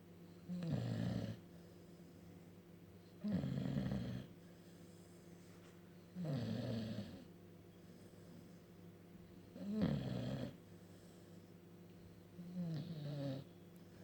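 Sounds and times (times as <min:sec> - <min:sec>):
dog snoring: 0:00.4 - 0:01.4, 0:03.2 - 0:04.4, 0:06.1 - 0:07.3, 0:09.5 - 0:10.6, 0:12.4 - 0:13.5.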